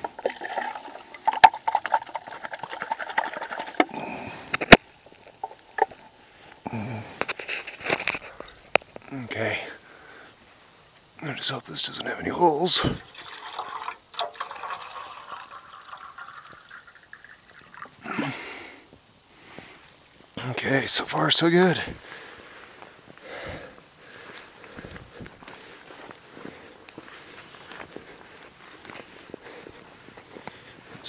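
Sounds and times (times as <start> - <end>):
water trickling into a can: 0.0 - 4.0, 12.9 - 18.1
low vocal sound: 3.9 - 4.6, 6.6 - 7.2.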